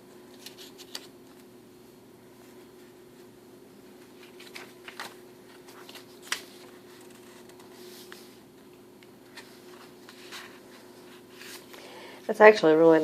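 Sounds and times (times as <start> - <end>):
paper rustling: 0.3 - 1.5, 4.0 - 8.5, 9.2 - 11.8.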